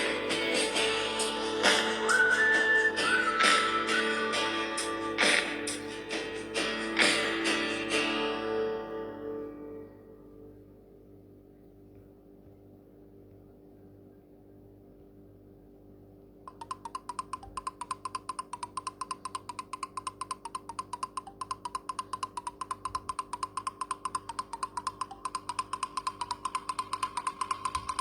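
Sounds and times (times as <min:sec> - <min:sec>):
ringtone of rapid percussive ticks: 0:16.5 - 0:28.0.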